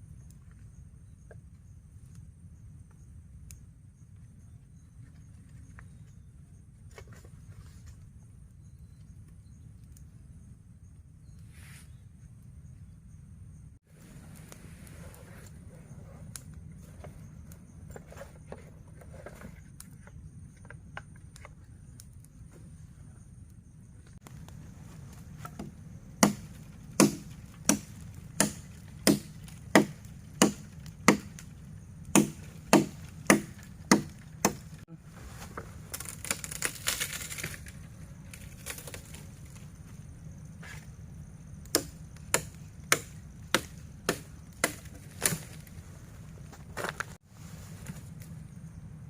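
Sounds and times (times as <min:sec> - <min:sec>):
wood being chopped: 0:25.4 - 0:31.5, 0:32.1 - 0:34.8, 0:41.6 - 0:45.7.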